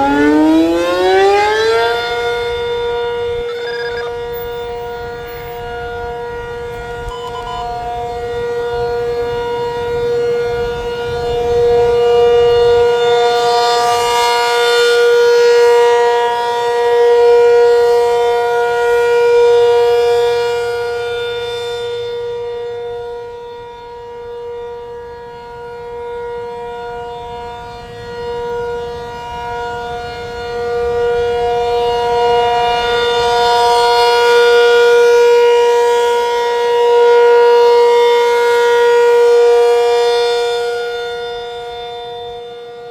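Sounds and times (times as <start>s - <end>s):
warning siren wailing: 0.0s - 42.9s.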